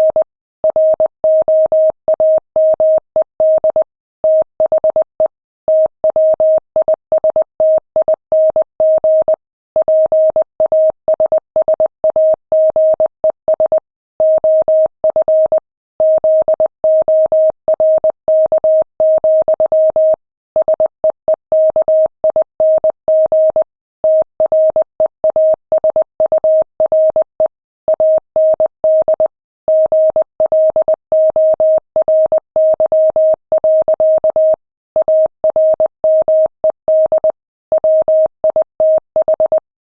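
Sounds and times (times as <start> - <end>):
morse code beeps: 21.6 - 39.6.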